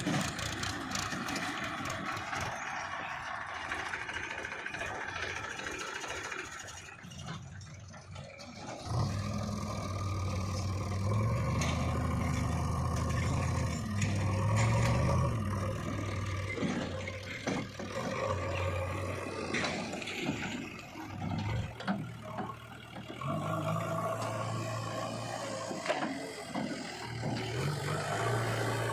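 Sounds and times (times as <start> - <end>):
heavy diesel engine revving: 0.0 - 28.9
scraping and clattering knocks: 10.2 - 23.5.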